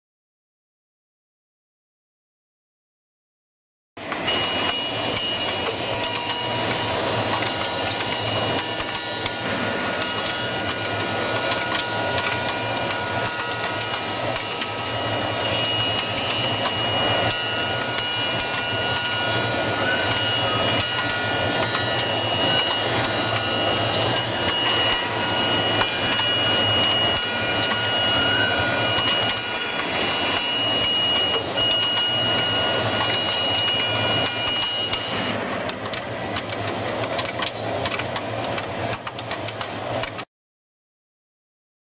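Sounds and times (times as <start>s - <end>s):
machine cutting metal: 4.0s - 40.2s
high-pitched whine: 4.2s - 35.5s.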